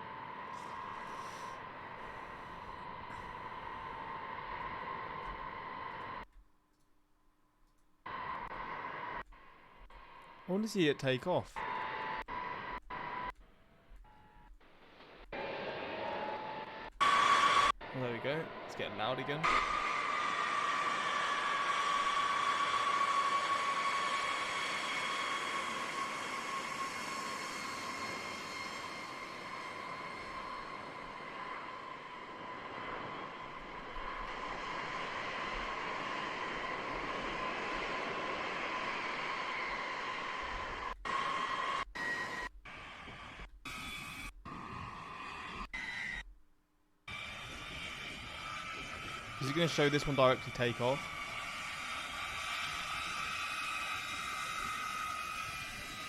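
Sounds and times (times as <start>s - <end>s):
jet engines whining: 0.0s - 6.3s, 8.1s - 13.4s, 14.0s - 46.2s, 47.1s - 56.0s
rushing noise: 14.9s - 46.2s.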